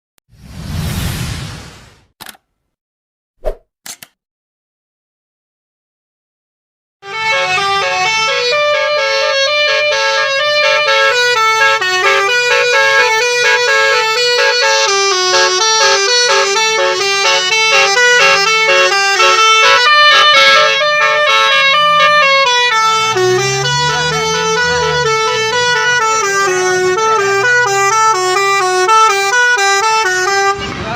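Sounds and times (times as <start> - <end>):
bus air horn melody: 7.0 - 30.7.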